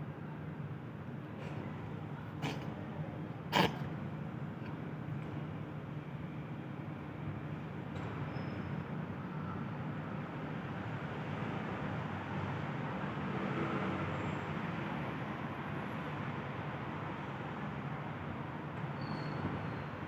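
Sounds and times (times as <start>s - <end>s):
traffic rumble: 0.0s - 8.0s.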